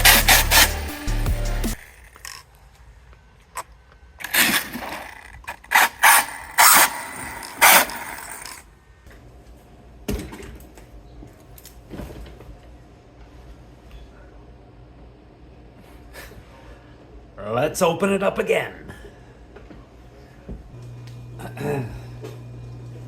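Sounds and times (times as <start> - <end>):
toy truck drivetrain whirring: 0.0 - 0.9, 1.7 - 2.6, 3.6 - 8.6.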